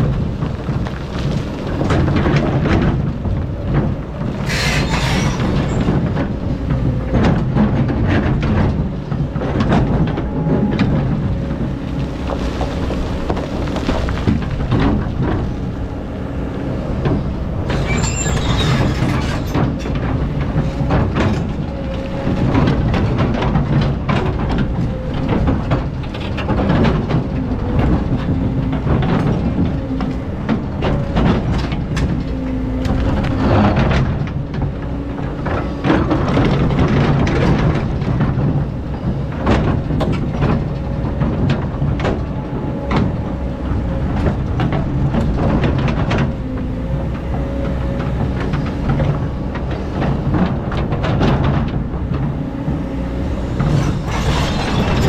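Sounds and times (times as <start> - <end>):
excavator diesel engine: 0.0 - 55.0
metal clanks and knocks: 1.9 - 34.7, 48.1 - 55.0
short hydraulic whines: 4.4 - 5.9, 17.7 - 19.6.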